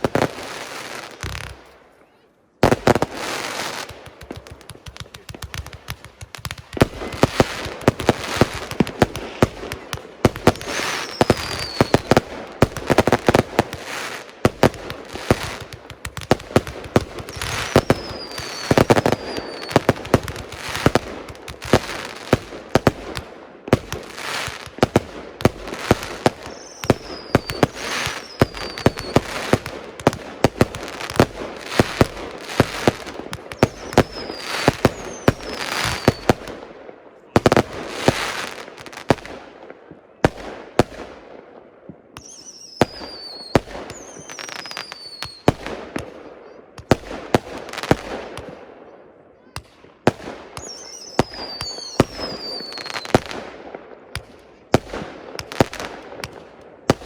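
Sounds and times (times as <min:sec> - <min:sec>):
fireworks bangs and crackling: 0:00.0 - 0:57.0
falling firework whistles: 0:10.5 - 0:12.2, 0:17.2 - 0:20.0, 0:26.3 - 0:29.6, 0:32.6 - 0:36.4, 0:42.2 - 0:45.6, 0:50.6 - 0:53.3.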